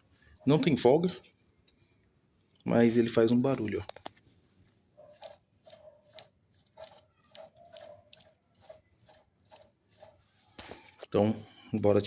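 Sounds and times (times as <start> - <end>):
wheel bearing grinding rasps: 5.1 - 11.0.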